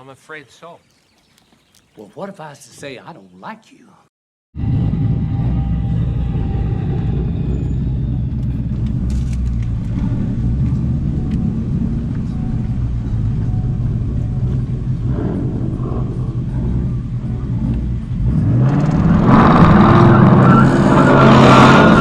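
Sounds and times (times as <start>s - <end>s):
car engine idling: 4.6s - 22.0s.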